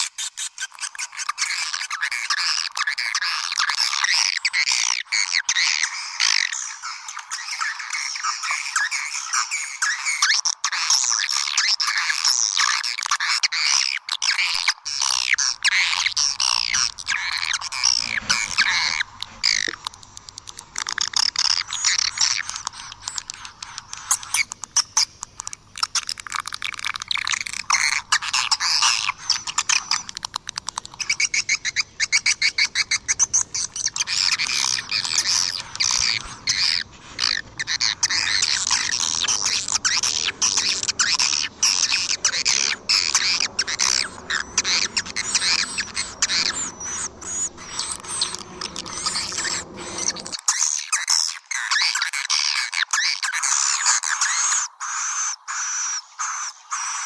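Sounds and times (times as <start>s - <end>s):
birds twittering: 0.0s - 57.0s
bird clicks: 15.0s - 50.5s.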